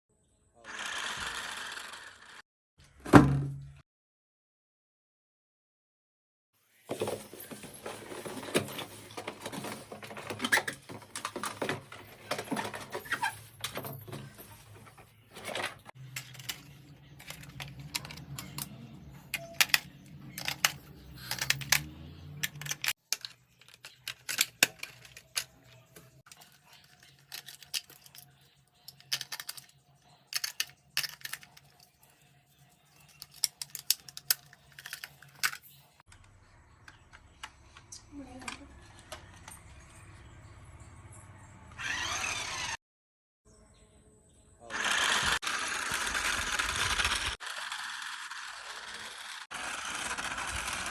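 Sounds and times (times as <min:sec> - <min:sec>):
toy car clicking and rattling: 0:00.7 - 0:02.4, 0:16.1 - 0:32.0, 0:33.0 - 0:35.8, 0:41.8 - 0:42.8, 0:44.7 - 0:50.9.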